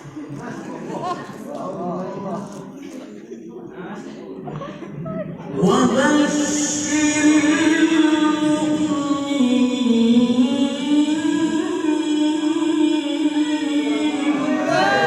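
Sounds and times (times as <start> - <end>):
person chanting recitation: 5.4 - 15.0.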